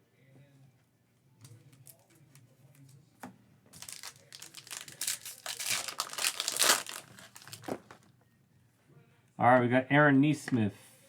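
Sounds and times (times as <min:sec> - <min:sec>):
foil wrapper crinkling and tearing: 0:03.8 - 0:08.0.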